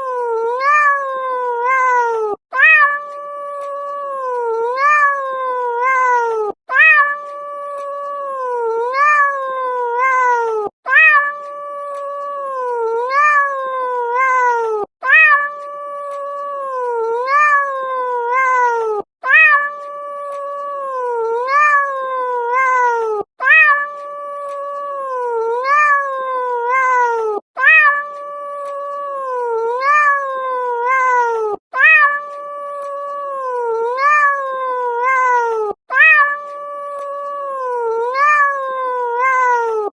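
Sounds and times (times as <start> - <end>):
cat meowing: 0.0 - 39.9.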